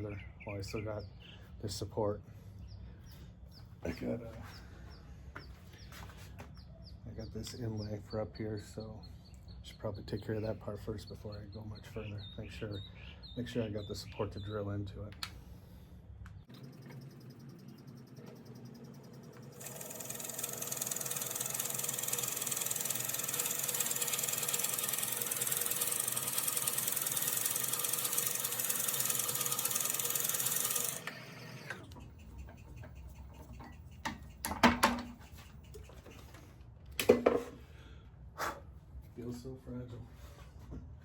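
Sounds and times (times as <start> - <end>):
drill grinding into hardwood: 19.5 - 31.9
sharp knocks and clicks: 31.8 - 36.4.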